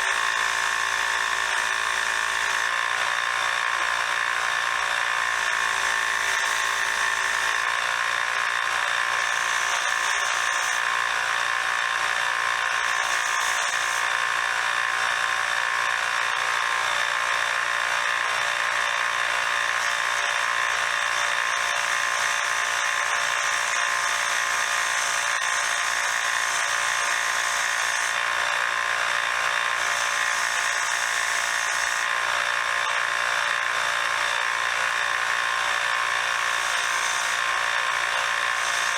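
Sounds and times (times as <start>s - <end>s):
belt sander whirring: 17.6s - 38.9s.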